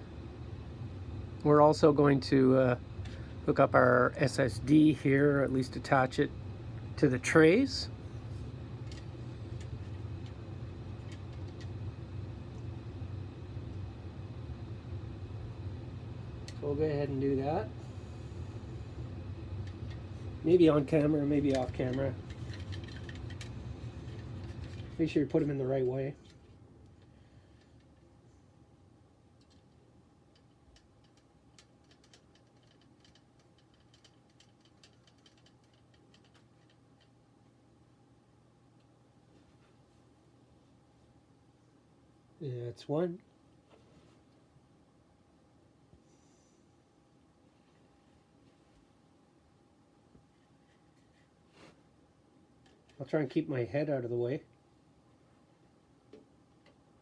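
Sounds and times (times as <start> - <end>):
low room hum: 0.0 - 57.0
clicks of small parts handled: 29.4 - 37.1.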